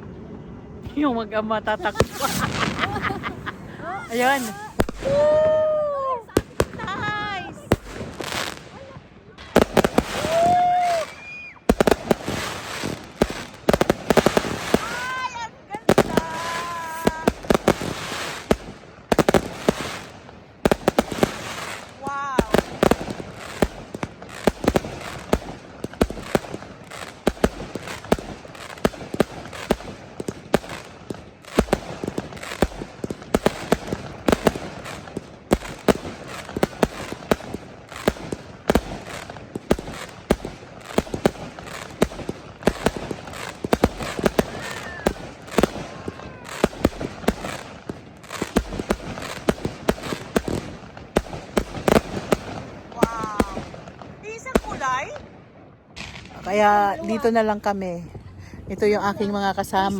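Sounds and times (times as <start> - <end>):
fireworks bangs and cracks: 0.0 - 59.9.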